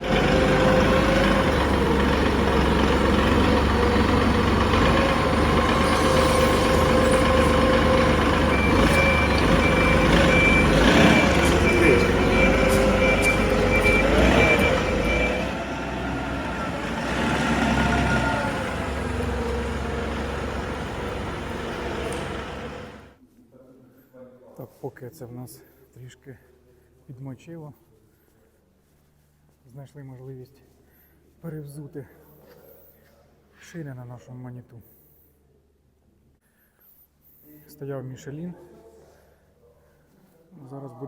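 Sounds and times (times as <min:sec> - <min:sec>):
diesel engine running: 0:00.0 - 0:23.2
reversing alarm beeping: 0:00.1 - 0:16.8.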